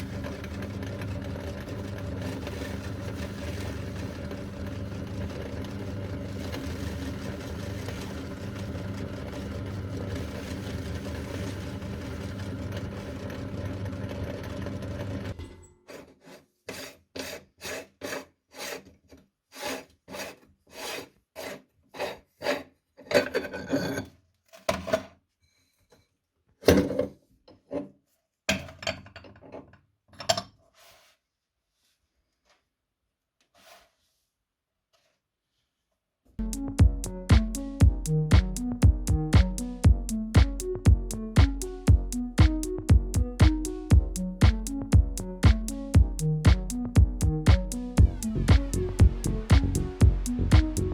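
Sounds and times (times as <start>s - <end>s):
meat grinder motor running: 0.0s - 15.4s
short scraping noises: 33.5s - 34.2s.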